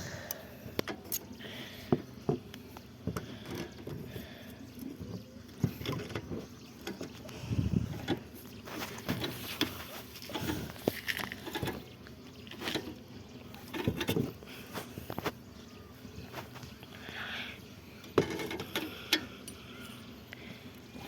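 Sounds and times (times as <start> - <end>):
parts being handled clicks: 0.8 - 1.3.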